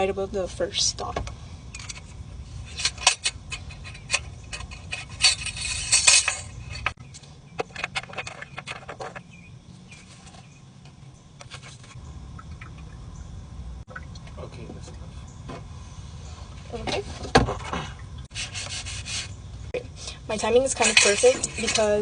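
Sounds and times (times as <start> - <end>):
low steady hum: 0.0 - 22.0
clicks of hard objects handled: 1.2 - 9.3
scratchy rattle: 1.7 - 12.0, 20.4 - 22.0.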